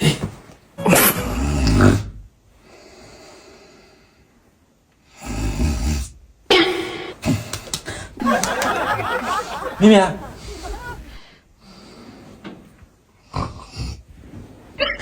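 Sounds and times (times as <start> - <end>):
quiet breath: 2.6 - 4.4.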